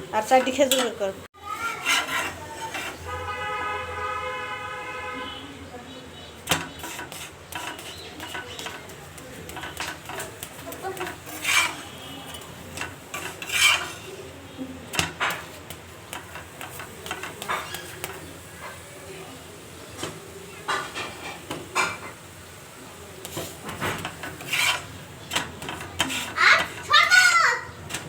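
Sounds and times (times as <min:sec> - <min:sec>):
dishes and utensils clinking: 0:00.2 - 0:03.3, 0:06.4 - 0:14.3, 0:14.9 - 0:18.9, 0:20.0 - 0:22.2, 0:23.2 - 0:27.0
dishes clattering: 0:06.5 - 0:14.2, 0:14.9 - 0:18.8, 0:20.0 - 0:22.2.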